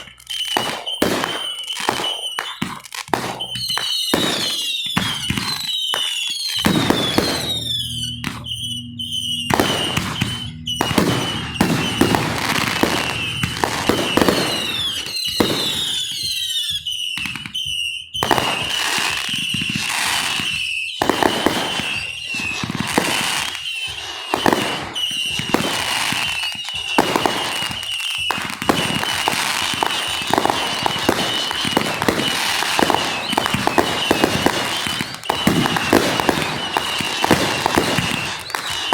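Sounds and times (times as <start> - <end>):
fireworks booms and crackling bursts: 0.0 - 38.9
high whistle: 0.0 - 38.9
whistling firework shells: 0.0 - 38.9.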